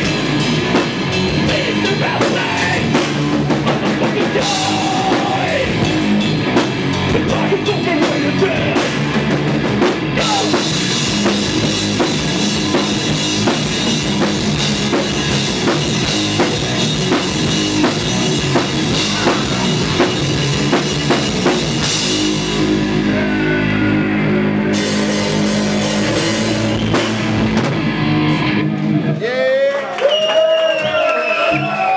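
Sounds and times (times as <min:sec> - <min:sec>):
pounding drum kit with cymbals: 0:00.0 - 0:23.8, 0:24.7 - 0:28.6
live rock band playing: 0:00.0 - 0:29.2
ringing guitar chords: 0:04.4 - 0:29.1.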